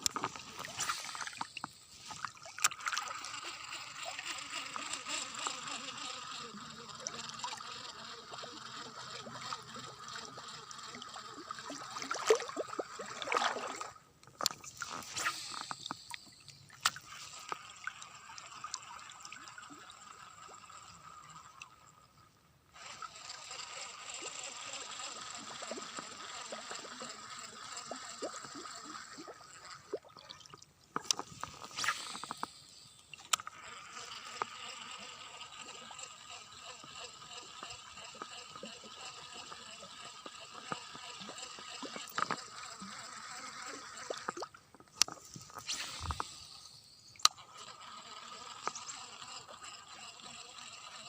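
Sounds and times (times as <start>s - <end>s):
water trickling and gurgling: 6.3s - 22.2s, 24.2s - 34.5s
steady outdoor hiss: 30.7s - 51.0s.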